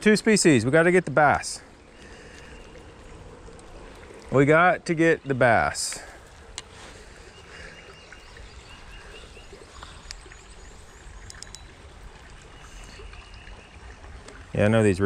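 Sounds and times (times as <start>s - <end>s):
flowing creek water: 0.0s - 15.0s
bird chirps: 7.1s - 13.8s
light clicks: 9.8s - 10.4s, 11.2s - 12.4s.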